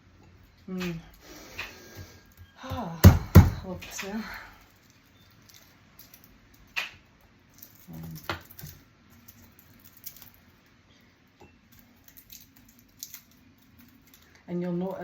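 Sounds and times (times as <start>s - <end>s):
loud knock: 3.0s - 3.7s
garlic cloves rustling and clicking: 4.0s - 10.8s, 11.6s - 15.0s.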